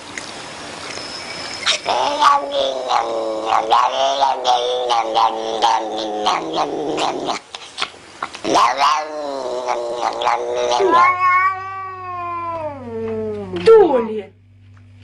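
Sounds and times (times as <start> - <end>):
cat yowling: 1.7 - 7.4, 8.5 - 13.5.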